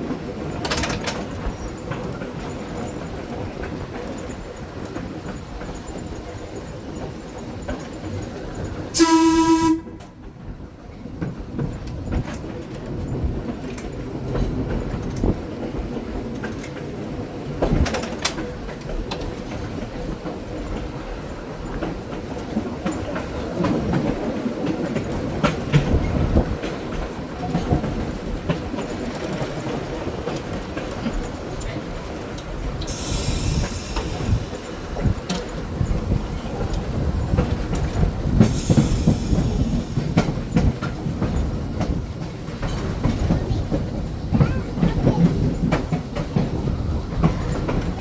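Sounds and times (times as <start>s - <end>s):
wheels rumbling over rails: 0.0s - 48.0s
trolley car horn blast: 9.0s - 10.1s.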